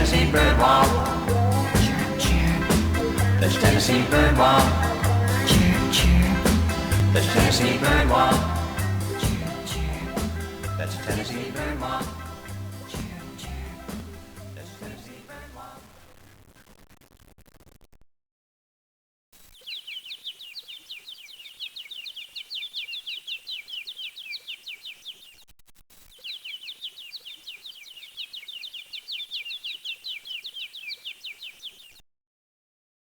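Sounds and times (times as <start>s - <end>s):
bird trilling song: 19.6s - 25.4s, 26.1s - 32.0s.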